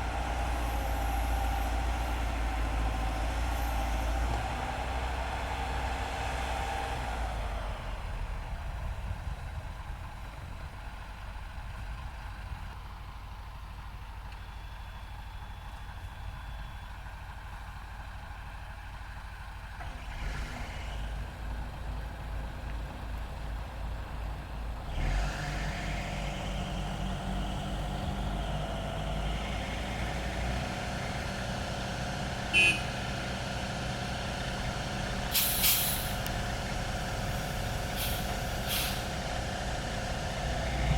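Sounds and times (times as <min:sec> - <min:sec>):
heavy diesel machinery running: 0:00.0 - 0:40.9
air hissing: 0:35.3 - 0:36.2, 0:37.3 - 0:39.1.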